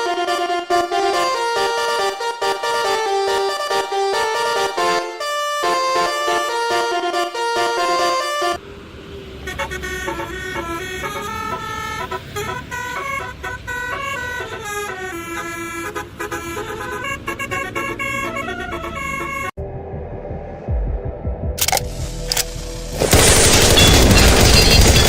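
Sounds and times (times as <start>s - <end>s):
musical horn tune: 0.0s - 8.6s, 9.5s - 19.6s
engine rumble: 8.6s - 25.0s.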